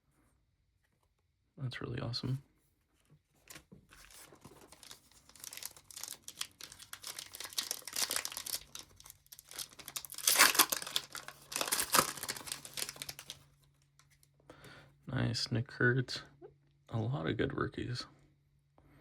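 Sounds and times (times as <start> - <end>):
card pack wrapper crinkling and tearing: 3.4 - 14.3.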